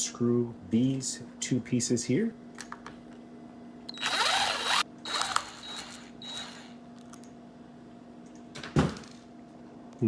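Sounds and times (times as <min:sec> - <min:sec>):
metal screws grinding: 0:03.9 - 0:06.7.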